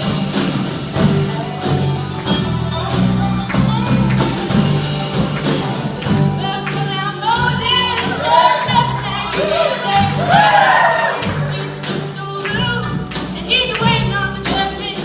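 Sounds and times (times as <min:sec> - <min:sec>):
live band playing: 0:00.0 - 0:15.0
voices singing: 0:06.4 - 0:12.6.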